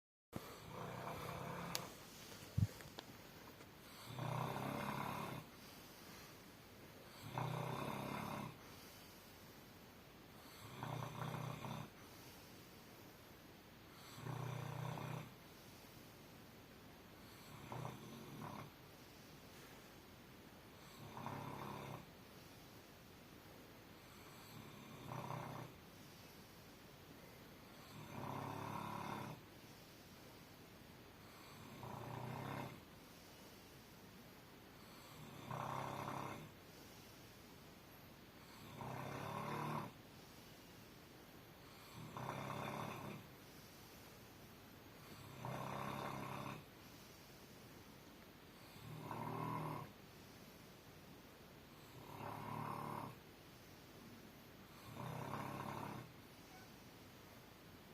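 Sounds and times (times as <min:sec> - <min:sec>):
person snoring: 0:00.4 - 0:02.0, 0:03.8 - 0:05.6, 0:07.0 - 0:08.6, 0:10.4 - 0:12.0, 0:14.0 - 0:15.4, 0:17.2 - 0:18.7, 0:20.8 - 0:22.1, 0:24.1 - 0:25.8, 0:27.6 - 0:29.4, 0:31.2 - 0:32.9, 0:34.8 - 0:36.6, 0:38.4 - 0:40.0, 0:41.7 - 0:43.3, 0:45.0 - 0:46.7, 0:48.6 - 0:50.0, 0:51.8 - 0:53.2, 0:54.7 - 0:56.7
quiet breathing: 0:00.4 - 0:57.9.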